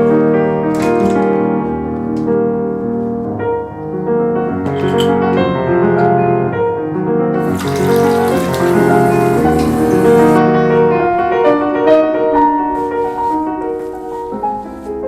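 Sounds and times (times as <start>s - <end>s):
slow piano music: 0.0s - 15.0s
steady hiss: 7.4s - 10.4s.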